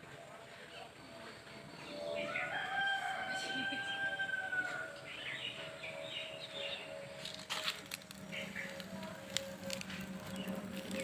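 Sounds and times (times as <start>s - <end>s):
rooster crowing: 2.3s - 5.1s.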